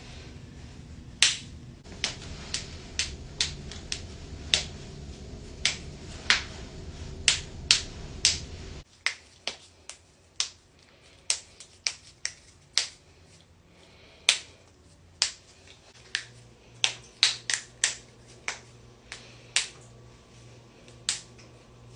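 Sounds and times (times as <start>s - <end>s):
low background rumble: 0.0s - 8.9s.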